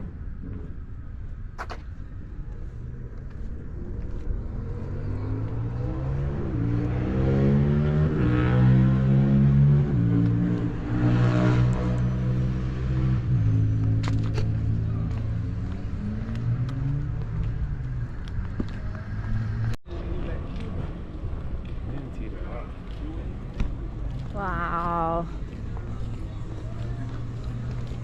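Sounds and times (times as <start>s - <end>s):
vehicle engine accelerating: 3.0s - 22.2s.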